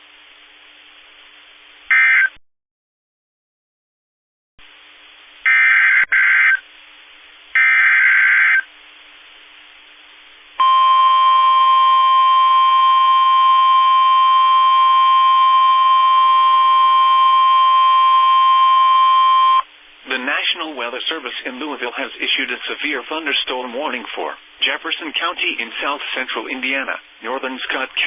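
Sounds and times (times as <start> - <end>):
steady warning alarm tone: 7.6 - 8.6, 10.6 - 19.6.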